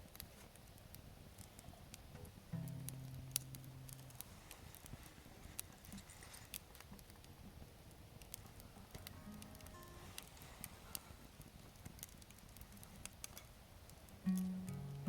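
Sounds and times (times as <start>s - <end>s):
campfire crackling and popping: 0.0s - 15.0s
low guitar note: 2.2s - 4.2s, 9.2s - 10.2s, 14.3s - 15.0s.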